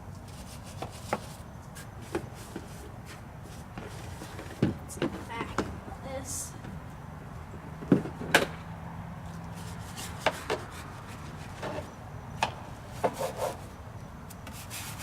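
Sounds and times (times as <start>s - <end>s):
scrub brush scraping: 14.5s - 15.0s.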